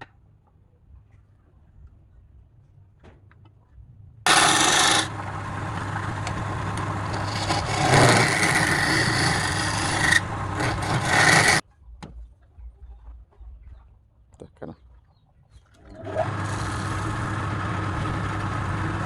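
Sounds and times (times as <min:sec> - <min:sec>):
lathe motor hum: 0:04.3 - 0:11.6, 0:16.0 - 0:19.0
tool scraping spinning wood: 0:04.3 - 0:11.6, 0:15.9 - 0:19.0.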